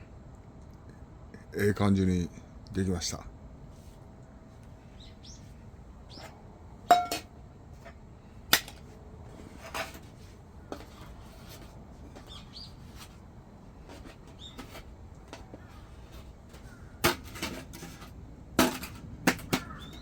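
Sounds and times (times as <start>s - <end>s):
bird chirps: 4.9s - 5.5s, 12.2s - 12.8s, 14.3s - 14.7s
tableware clinking: 6.9s - 7.3s.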